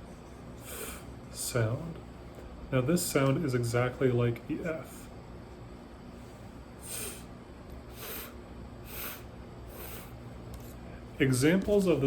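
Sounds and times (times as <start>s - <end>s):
faint room hum: 0.0s - 12.0s.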